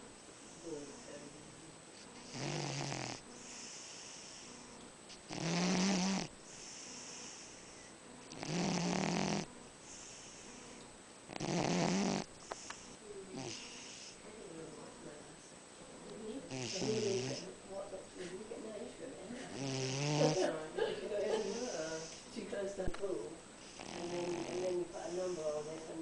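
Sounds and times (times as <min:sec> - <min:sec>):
cat snoring: 0:02.2 - 0:14.2, 0:16.5 - 0:17.4, 0:19.5 - 0:20.4, 0:23.6 - 0:25.8.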